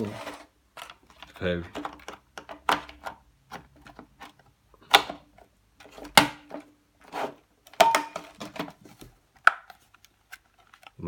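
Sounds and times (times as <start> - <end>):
hard plastic knocks and clicks: 1.0 - 6.7.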